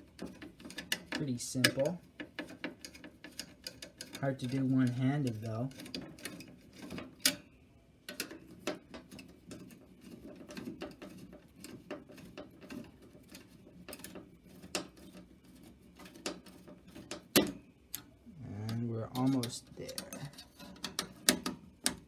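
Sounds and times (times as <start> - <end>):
screwdriver clicks and scrapes: 0.2 - 7.4, 18.7 - 22.0.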